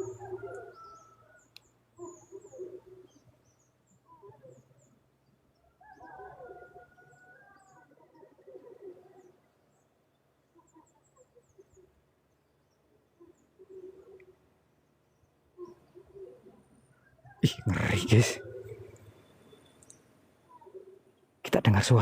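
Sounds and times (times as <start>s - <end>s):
gliding animal calls: 0.0s - 3.3s, 15.5s - 21.2s.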